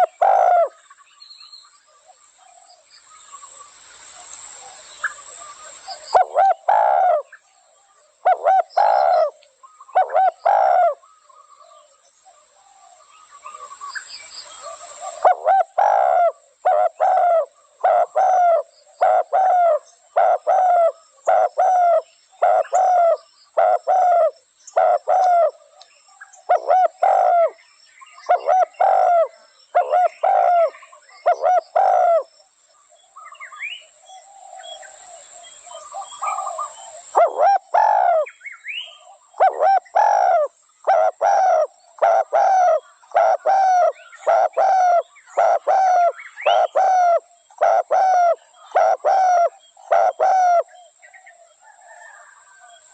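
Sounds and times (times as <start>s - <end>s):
dove cooing: 0.0s - 0.8s, 4.6s - 7.4s, 8.2s - 11.9s, 14.5s - 25.8s, 26.5s - 27.6s, 28.2s - 32.3s, 34.4s - 52.9s.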